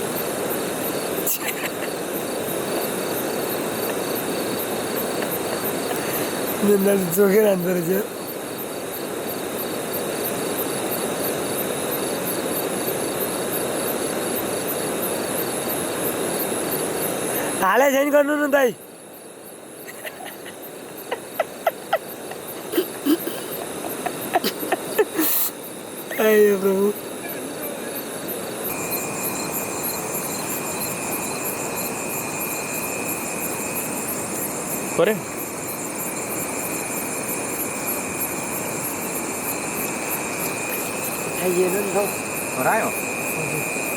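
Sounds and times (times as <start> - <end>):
constant rushing hiss: 0.0 - 43.9
night insects chirping: 0.0 - 43.9
steady whine: 19.9 - 43.9.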